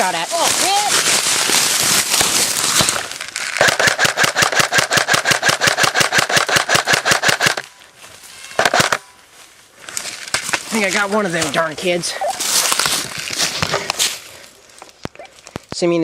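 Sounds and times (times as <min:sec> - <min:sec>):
airsoft gun firing full-auto: 0:03.6 - 0:07.6, 0:08.6 - 0:09.0.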